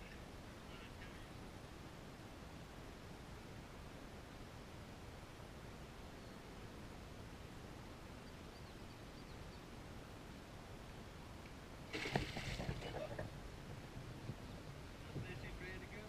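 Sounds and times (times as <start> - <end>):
faint bird chirps: 0.1 - 1.4, 6.0 - 6.5, 8.2 - 9.7
knocks and rustling: 11.9 - 14.4.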